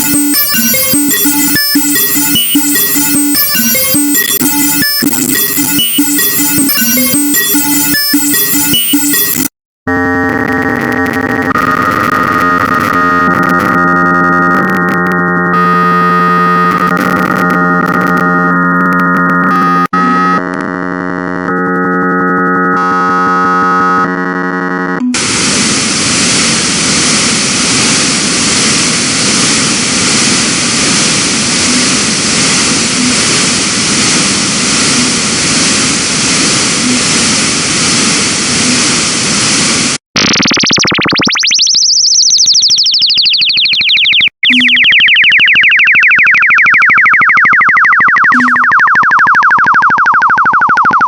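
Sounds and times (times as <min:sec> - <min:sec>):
buzzy synth tones: 0:00.0 - 0:26.9
loud steady noise hiss: 0:25.2 - 0:39.9.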